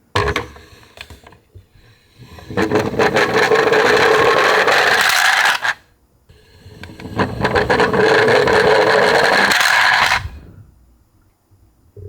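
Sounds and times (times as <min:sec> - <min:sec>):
toy truck wheels rattling on a ramp: 0:02.4 - 0:05.8, 0:07.0 - 0:10.3.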